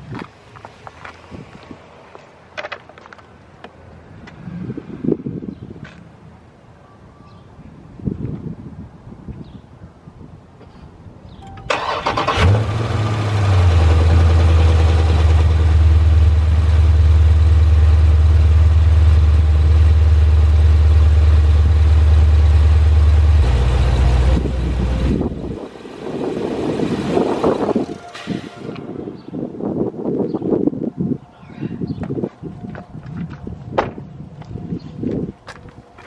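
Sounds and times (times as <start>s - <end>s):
car engine revving and idling: 12.1s - 28.0s.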